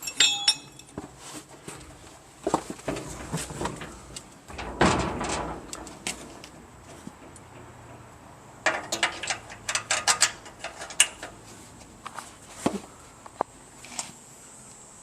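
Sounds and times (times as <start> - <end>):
light metal clinks and taps: 0.0 - 1.0.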